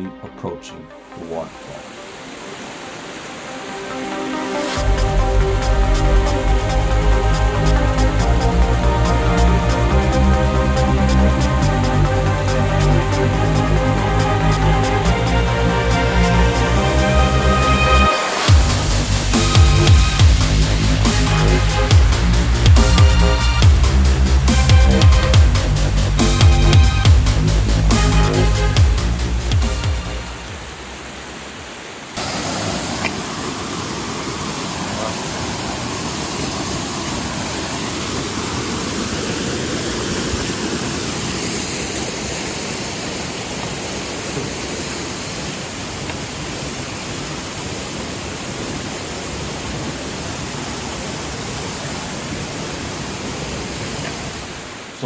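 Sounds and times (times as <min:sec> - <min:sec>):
waterfall splashing roar: 0:01.1 - 0:25.5, 0:29.7 - 0:55.0.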